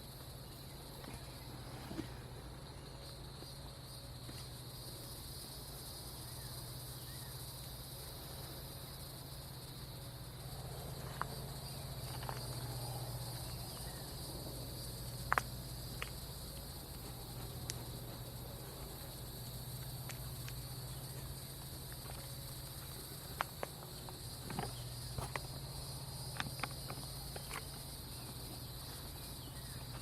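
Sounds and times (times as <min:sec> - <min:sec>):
insects chirring: 0:00.0 - 0:30.0
low steady hum: 0:00.0 - 0:30.0.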